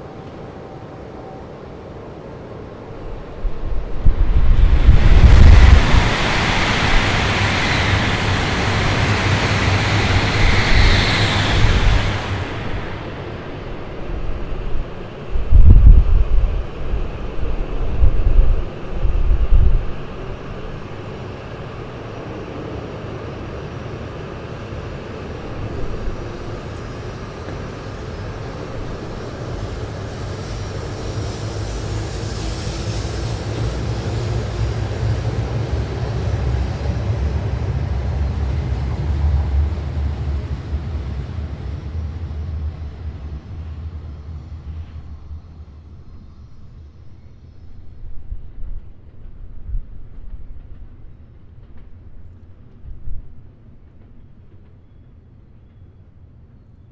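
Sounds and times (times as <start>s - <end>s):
high-speed train rushing past: 0.0s - 54.8s
wind buffeting microphone: 2.8s - 22.5s, 24.4s - 46.2s.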